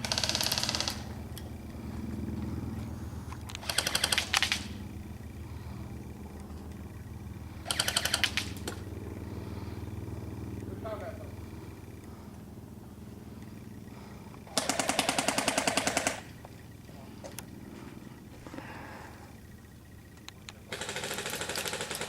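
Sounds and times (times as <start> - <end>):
airsoft gun bursts: 0.0 - 1.2, 3.5 - 4.8, 7.6 - 8.9, 14.5 - 16.4, 20.7 - 22.0.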